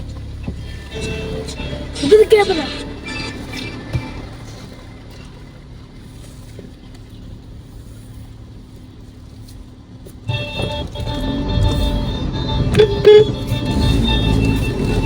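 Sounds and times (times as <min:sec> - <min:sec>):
car engine rumble inside cabin: 0:00.0 - 0:15.0
music: 0:00.5 - 0:04.4, 0:10.3 - 0:15.0.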